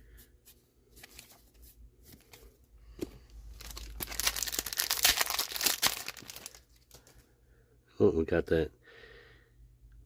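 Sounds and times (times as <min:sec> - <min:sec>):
foil wrapper tearing and crinkling: 0:03.6 - 0:07.1.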